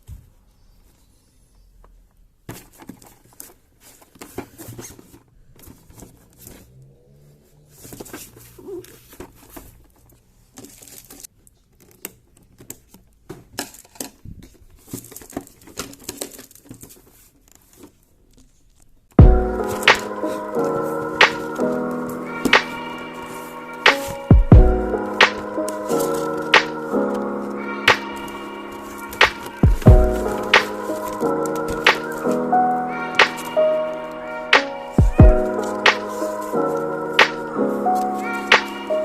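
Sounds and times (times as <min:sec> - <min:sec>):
packaging rustling: 0:25.2 - 0:32.5.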